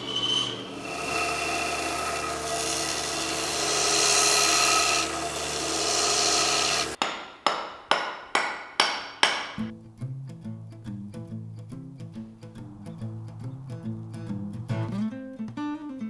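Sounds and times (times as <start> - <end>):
power grinder grinding steel: 0.0 - 7.0.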